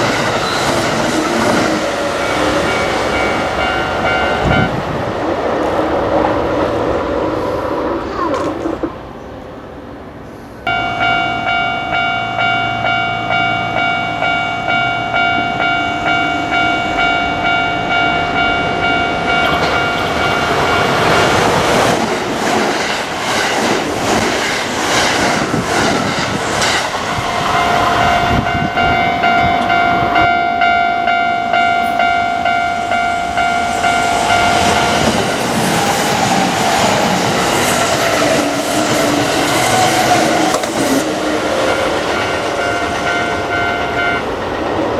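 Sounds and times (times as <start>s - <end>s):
train rumble: 0.0s - 44.9s
level crossing bell dinging: 10.7s - 21.0s, 27.5s - 35.5s
train wheels clattering over rail joints: 35.0s - 43.1s.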